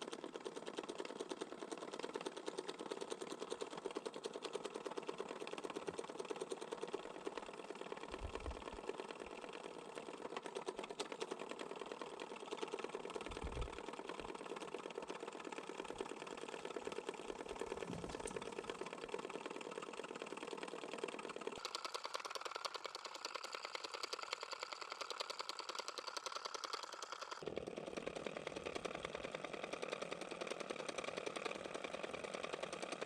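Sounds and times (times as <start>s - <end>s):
small machine tapping and humming: 0.0s - 33.0s.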